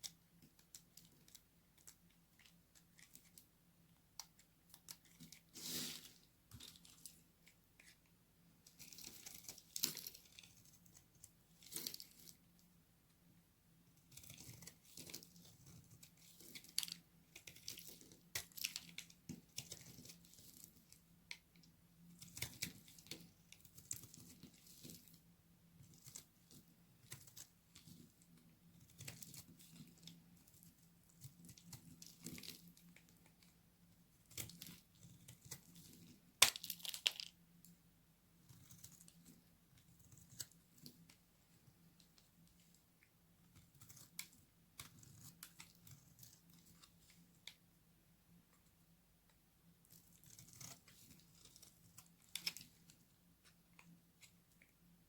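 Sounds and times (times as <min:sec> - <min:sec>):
soap crackling as it is cut: 0:08.7 - 0:12.4, 0:14.0 - 0:33.5, 0:34.2 - 0:37.2, 0:38.4 - 0:41.2, 0:43.5 - 0:47.6, 0:49.8 - 0:54.4.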